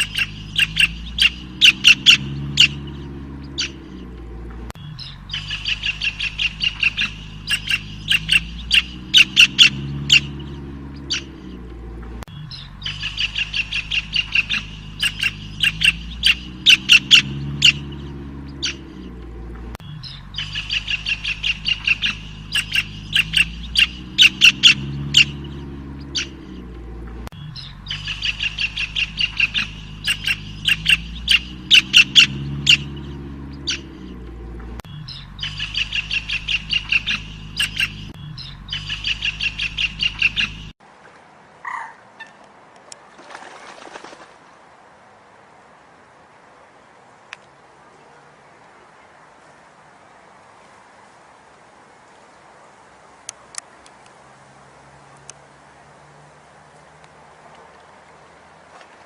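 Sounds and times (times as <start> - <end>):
songbird chirping: 0.0 - 40.8.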